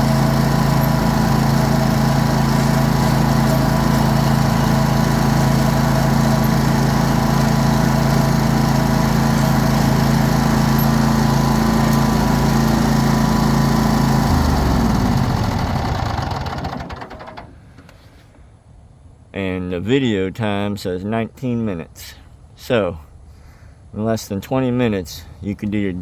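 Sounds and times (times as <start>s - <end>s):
mower engine winding down: 0.0s - 17.9s.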